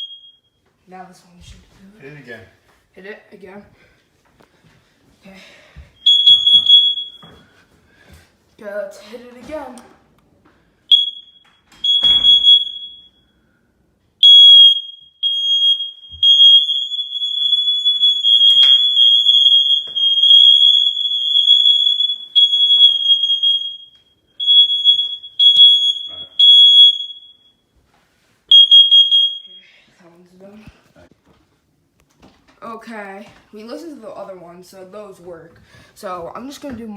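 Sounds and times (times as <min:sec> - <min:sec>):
smoke alarm shrill blasts: 0:00.0 - 0:00.6, 0:06.0 - 0:07.7, 0:10.8 - 0:13.5, 0:14.2 - 0:27.7, 0:28.5 - 0:29.9.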